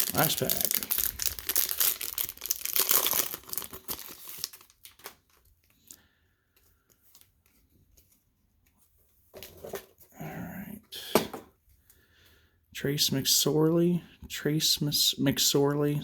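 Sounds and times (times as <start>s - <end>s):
card pack wrapper tearing: 0.0s - 5.5s.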